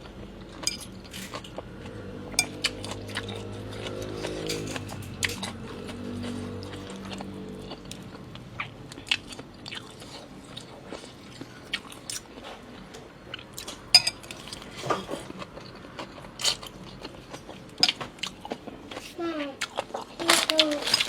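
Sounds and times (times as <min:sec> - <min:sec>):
person chewing and slurping food: 0:00.0 - 0:21.0
utensils clicking against bowl: 0:02.4 - 0:05.6.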